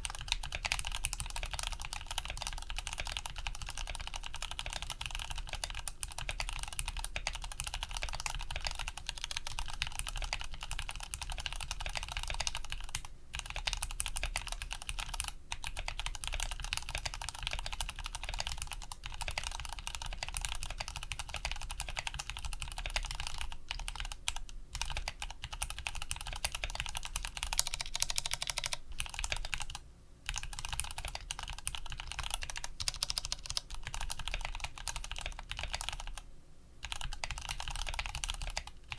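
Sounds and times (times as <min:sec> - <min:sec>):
mechanical keyboard typing: 0:00.0 - 0:36.2, 0:36.8 - 0:38.9.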